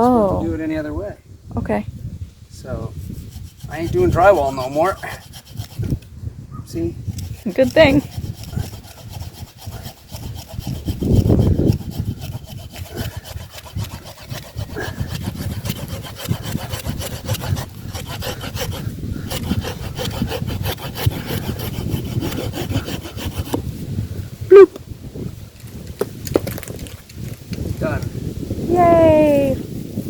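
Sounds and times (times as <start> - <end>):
saw cutting through tree root: 2.7 - 6.1, 6.7 - 23.8.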